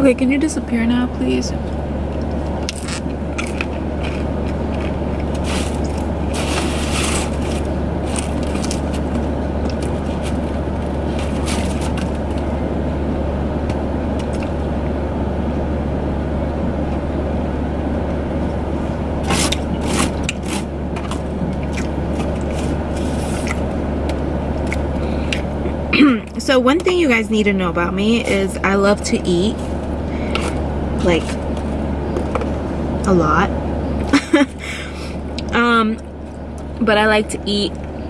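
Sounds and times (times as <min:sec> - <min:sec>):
car cabin hum and rushing: 0:00.0 - 0:38.0
scraping and crinkling handling: 0:01.7 - 0:12.6, 0:18.4 - 0:27.3, 0:28.1 - 0:33.1.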